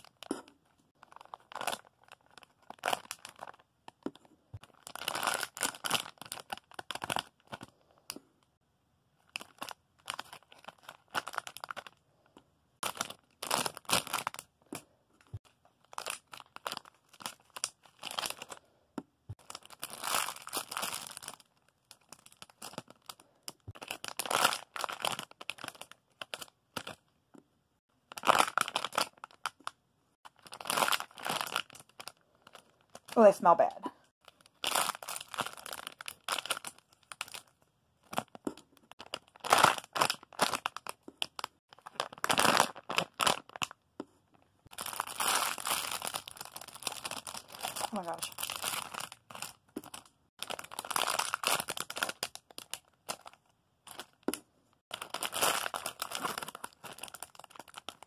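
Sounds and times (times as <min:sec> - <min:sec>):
plastic packaging crinkling: 0:00.0 - 0:08.2, 0:09.2 - 0:12.0, 0:12.8 - 0:14.5, 0:15.2 - 0:18.6, 0:19.3 - 0:27.1, 0:28.0 - 0:33.2, 0:34.2 - 0:43.8, 0:44.6 - 0:58.0.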